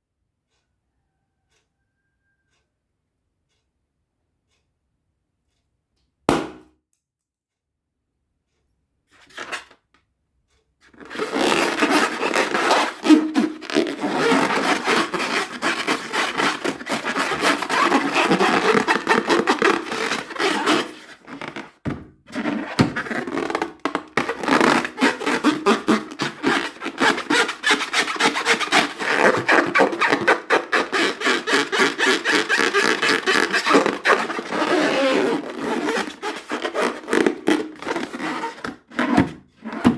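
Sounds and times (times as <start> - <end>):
balloons rubbed and squeezed: 10.9 - 39.9.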